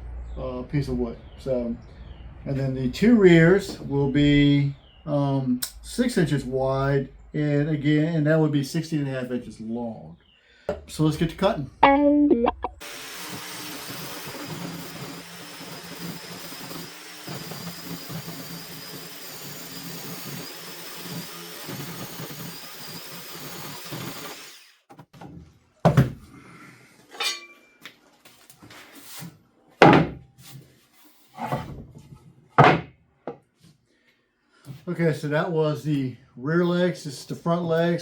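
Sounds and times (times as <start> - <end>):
power saw cutting wood: 12.8 - 24.9
wooden knocks and thumps: 24.9 - 26.2, 29.8 - 30.2, 31.4 - 33.4.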